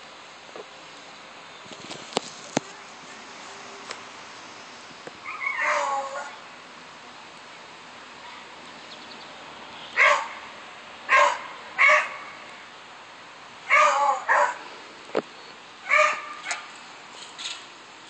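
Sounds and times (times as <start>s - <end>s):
dog barking: 5.2s - 6.4s, 10.0s - 10.5s, 11.1s - 12.4s, 13.7s - 14.6s, 15.9s - 16.7s.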